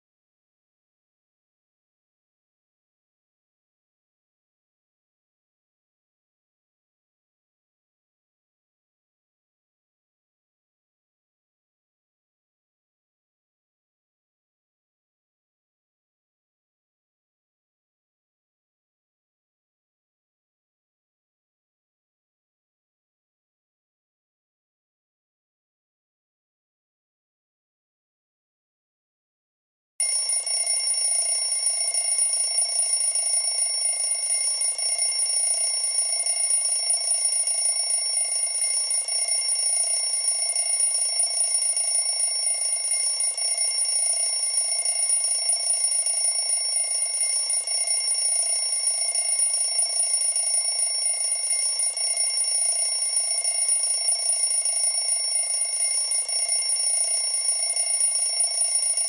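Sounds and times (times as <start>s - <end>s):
timer alarm ringing: 30.0s - 59.0s.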